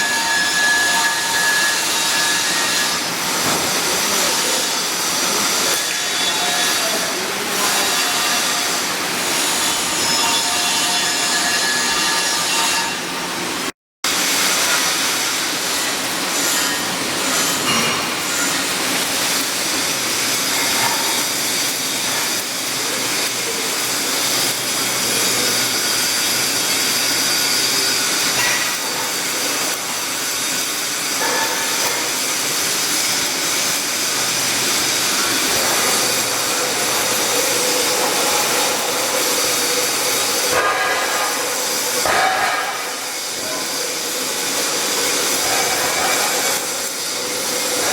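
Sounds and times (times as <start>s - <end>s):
welding arc crackling hiss: 0.0s - 47.9s.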